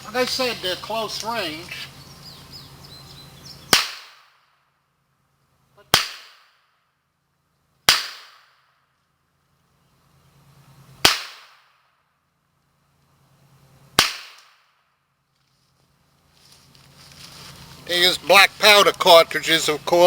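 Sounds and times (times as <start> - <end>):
revolver shots: 3.7 - 4.4.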